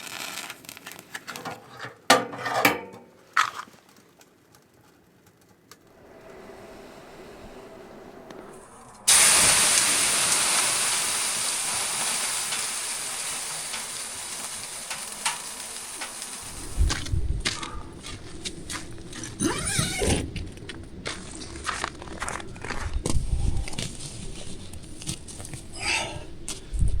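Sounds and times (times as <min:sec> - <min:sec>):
steam hissing on hot stones: 0:06.0 - 0:20.0
rustling: 0:13.2 - 0:27.0.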